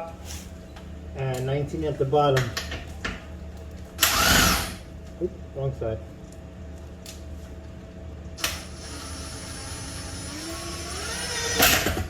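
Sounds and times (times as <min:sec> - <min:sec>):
steady low hum: 0:00.0 - 0:12.0
power tool motor whine: 0:04.0 - 0:04.8, 0:08.4 - 0:12.0.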